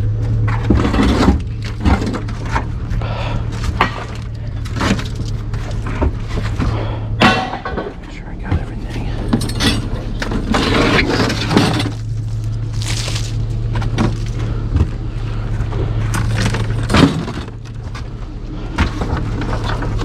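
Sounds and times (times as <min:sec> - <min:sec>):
steady low hum: 0:00.0 - 0:20.0
scrap steel crashing onto a pile: 0:07.2 - 0:08.0.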